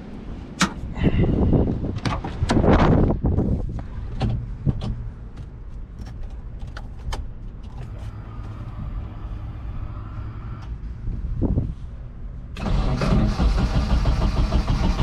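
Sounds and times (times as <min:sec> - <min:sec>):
low steady hum: 0:00.0 - 0:13.1
faint steady whine: 0:07.6 - 0:12.6.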